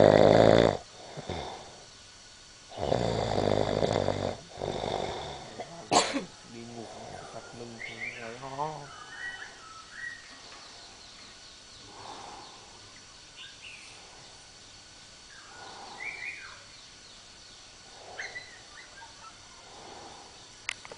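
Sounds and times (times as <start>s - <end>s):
soft snoring: 0.0s - 1.9s, 2.7s - 5.9s, 6.6s - 7.6s, 19.5s - 20.5s
faint high-pitched hum: 0.0s - 20.9s.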